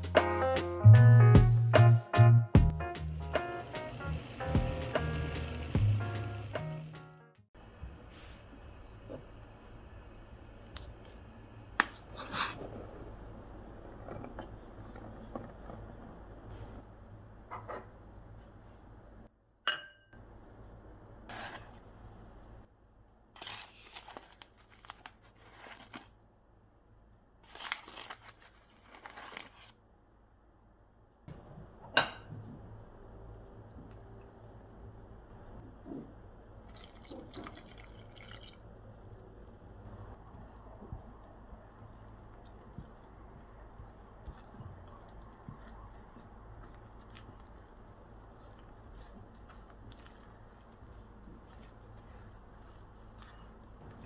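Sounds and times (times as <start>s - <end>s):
packaging crinkling and tearing: 23.4s - 26.2s, 27.4s - 29.8s
bread dough squishing: 36.6s - 54.0s.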